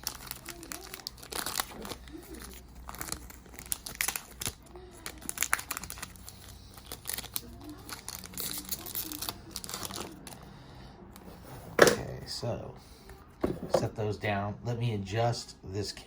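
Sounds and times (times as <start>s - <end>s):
plastic wrapper crinkling and tearing: 0.0s - 10.5s.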